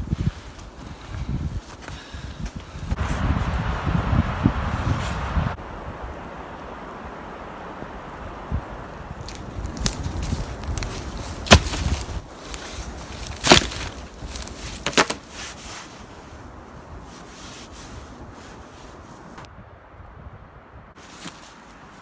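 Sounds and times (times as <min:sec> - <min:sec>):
handling noise: 0:09.2 - 0:16.0
blade chopping wood: 0:09.7 - 0:15.4.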